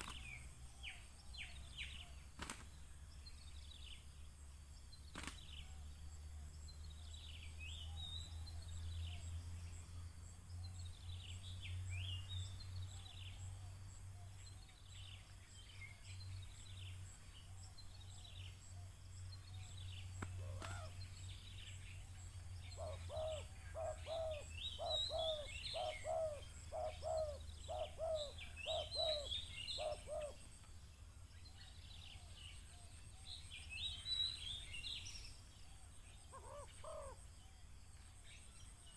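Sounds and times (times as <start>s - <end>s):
small birds chirping: 0.0s - 38.9s
dove cooing: 20.4s - 21.0s, 22.7s - 30.5s, 36.3s - 37.2s.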